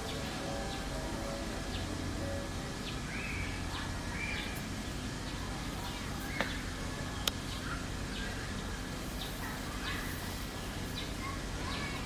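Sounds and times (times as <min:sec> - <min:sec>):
outdoor background noise: 0:00.0 - 0:12.0
bird chirps: 0:02.8 - 0:04.6.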